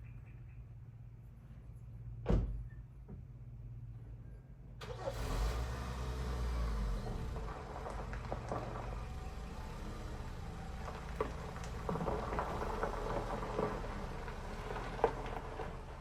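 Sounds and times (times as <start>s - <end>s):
engine humming: 4.8s - 16.0s.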